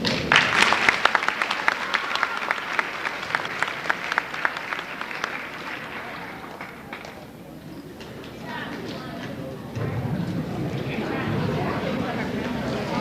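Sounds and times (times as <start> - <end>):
audience applauding: 0.0 - 7.6.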